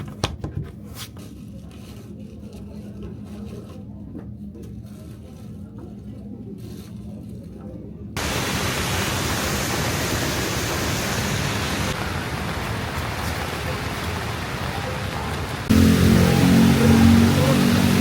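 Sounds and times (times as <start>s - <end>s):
heavy rain hissing: 8.2s - 18.0s.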